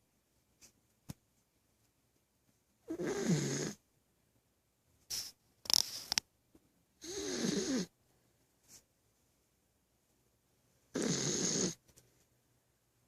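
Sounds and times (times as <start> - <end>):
dog snoring: 2.9 - 3.8, 7.0 - 7.9, 10.9 - 11.8.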